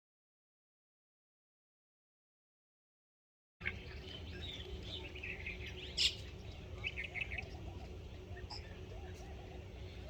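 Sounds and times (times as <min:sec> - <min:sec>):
low rumbling background noise: 0:03.6 - 0:10.0
small birds chirping: 0:03.6 - 0:10.0.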